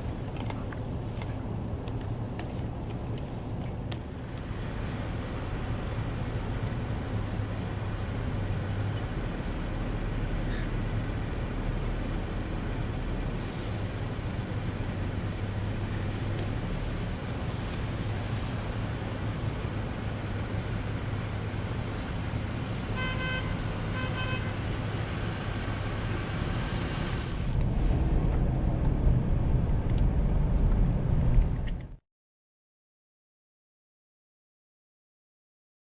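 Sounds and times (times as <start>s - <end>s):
city traffic rumble: 0.0s - 32.0s
car horn honking: 22.9s - 24.7s.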